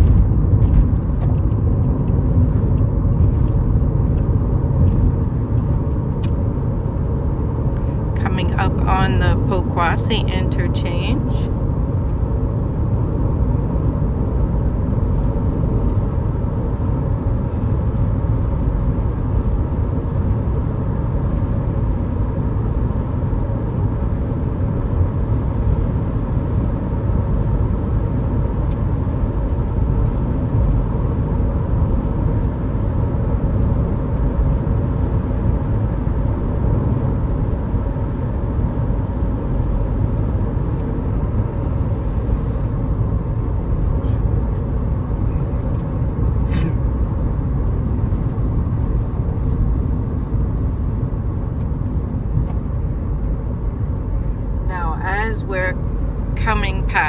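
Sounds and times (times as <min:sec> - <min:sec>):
car road and engine rumble: 0:00.0 - 0:57.0.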